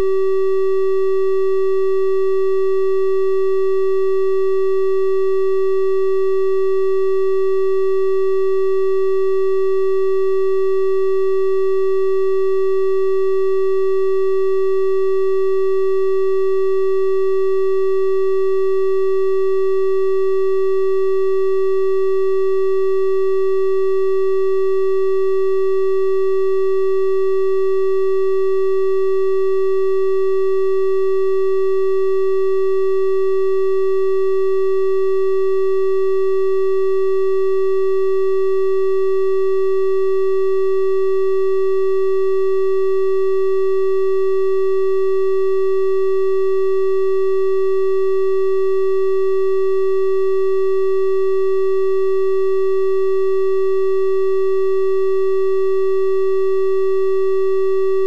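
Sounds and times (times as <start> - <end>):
triangle-wave test tone: 0.0 - 58.0.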